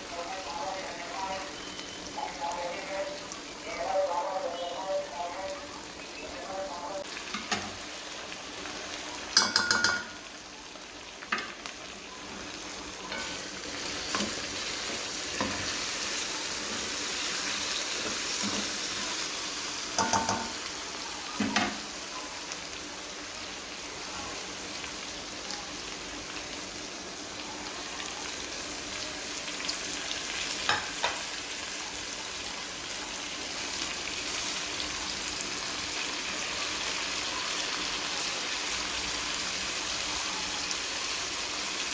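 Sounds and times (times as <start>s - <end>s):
food sizzling in oil: 0.0s - 41.9s
utensil clattering against pan: 9.4s - 10.2s.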